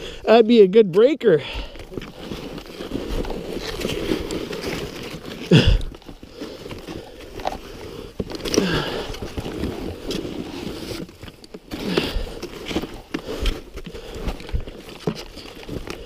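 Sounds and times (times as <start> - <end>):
grunts or heavy breaths: 5.4 - 7.2, 8.4 - 9.6.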